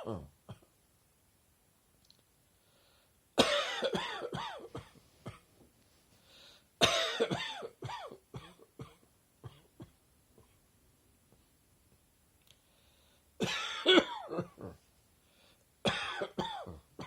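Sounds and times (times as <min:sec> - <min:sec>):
breath in: 0:02.5 - 0:03.2, 0:06.2 - 0:06.7, 0:12.5 - 0:13.3, 0:15.2 - 0:15.6
person coughing: 0:03.4 - 0:05.4, 0:06.8 - 0:10.6, 0:13.4 - 0:14.8, 0:15.8 - 0:17.0.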